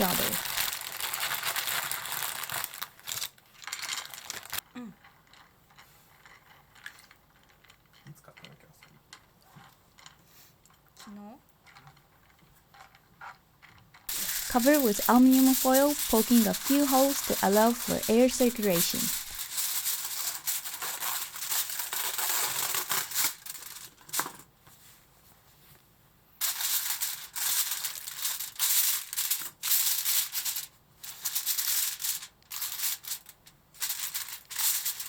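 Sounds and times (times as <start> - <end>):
aluminium foil crinkling: 0.0 - 4.6, 14.1 - 24.4, 26.4 - 35.0.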